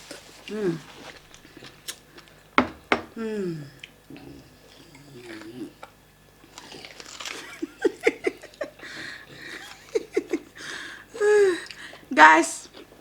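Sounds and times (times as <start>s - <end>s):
person laughing: 7.4s - 10.6s.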